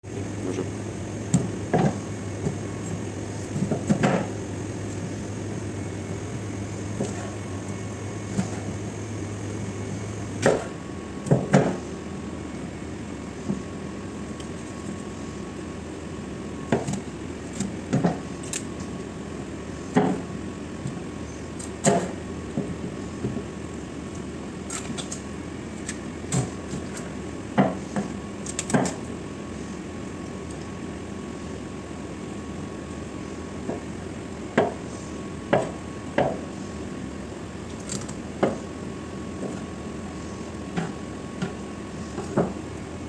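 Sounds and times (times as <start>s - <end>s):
low hum: 0.1s - 10.6s.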